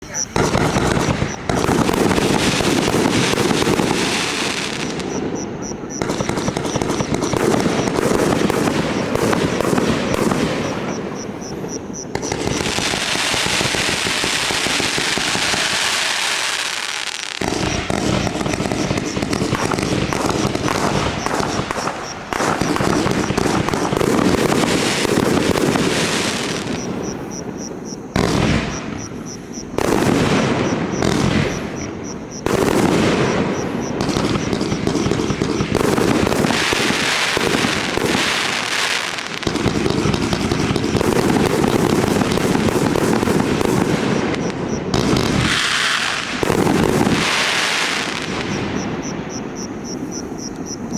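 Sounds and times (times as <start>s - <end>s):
fireworks firing in rapid volleys: 0.0s - 50.9s
high hissing crackle: 10.6s - 27.8s.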